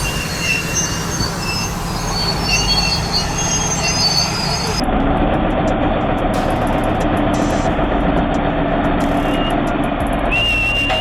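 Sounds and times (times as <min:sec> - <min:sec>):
high-pitched metal squeals: 0:00.0 - 0:04.8
engine drone: 0:00.0 - 0:11.0
heavy machinery rumbling: 0:00.0 - 0:11.0.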